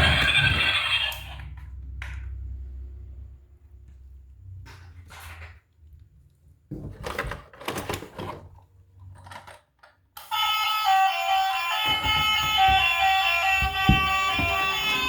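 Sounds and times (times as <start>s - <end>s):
plastic toys clicking and rattling: 7.0s - 10.2s
tune of stepped tones: 11.2s - 15.0s.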